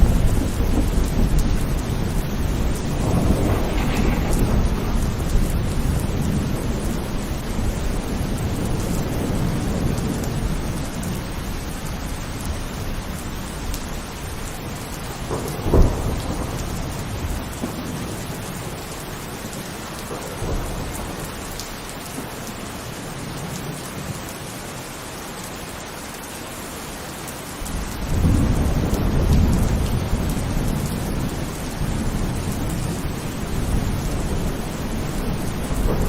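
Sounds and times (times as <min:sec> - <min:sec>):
thunder crack: 0:00.0 - 0:10.5, 0:15.0 - 0:21.6, 0:28.0 - 0:36.0
low rumble of thunder: 0:00.0 - 0:24.1, 0:27.6 - 0:36.0
heavy rain falling: 0:00.0 - 0:36.0.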